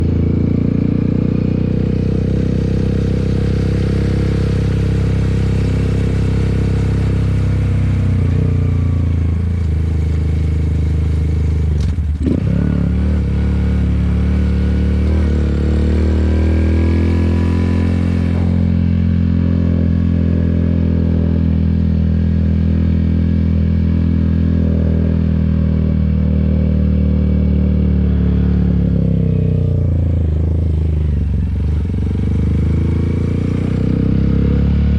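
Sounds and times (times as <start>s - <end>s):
motorcycle engine running: 0.0s - 34.9s.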